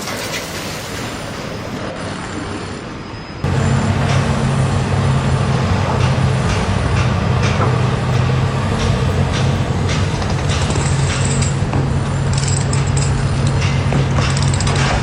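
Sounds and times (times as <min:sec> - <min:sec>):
heavy machinery engine humming: 0:03.4 - 0:15.0.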